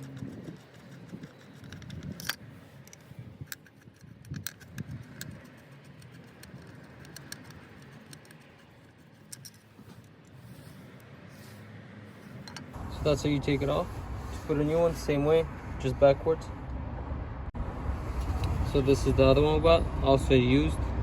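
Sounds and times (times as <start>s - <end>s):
metallic clicks of hand tools: 0.0s - 10.3s.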